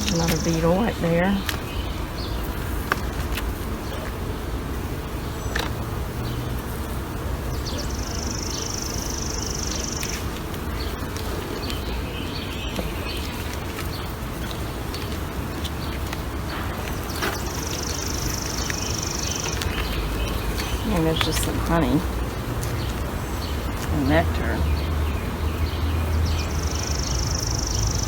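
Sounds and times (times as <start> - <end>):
hive frames clicking: 0.0 - 0.6, 12.7 - 23.9
honeybees humming: 0.0 - 28.0.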